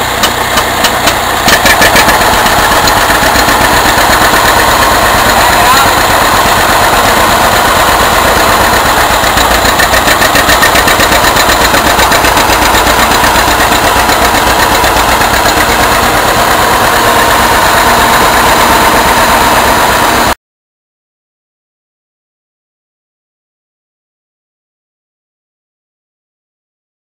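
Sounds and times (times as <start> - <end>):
tractor engine running: 0.0 - 20.4.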